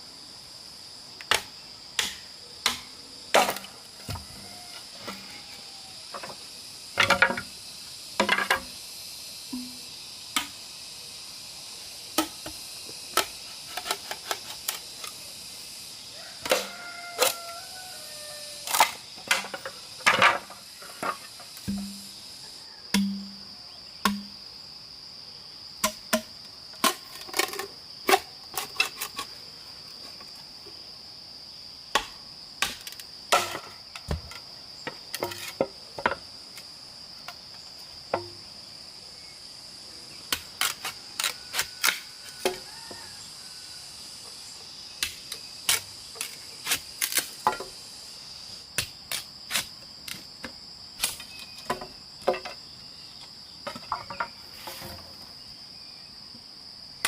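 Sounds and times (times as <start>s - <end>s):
high-pitched insect chorus: 0.0s - 57.0s
sharp knocks: 21.6s - 22.1s, 22.9s - 23.4s, 24.0s - 24.3s.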